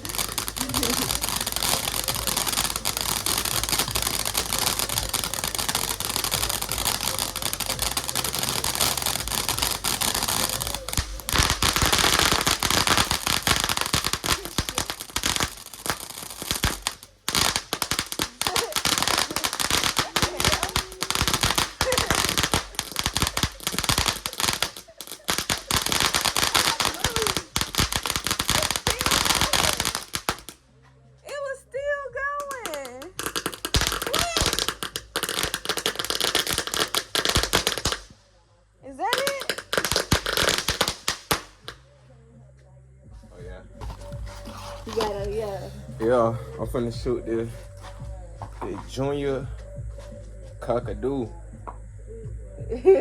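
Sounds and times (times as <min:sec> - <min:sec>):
firework crackling pops and bangs: 0:00.0 - 0:30.6, 0:32.2 - 0:38.3, 0:38.9 - 0:41.9, 0:43.8 - 0:49.2.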